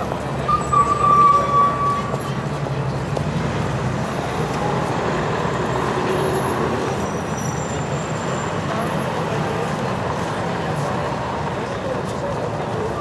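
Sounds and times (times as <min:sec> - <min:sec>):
city street traffic: 0:00.0 - 0:13.0
high squeal: 0:00.5 - 0:02.2.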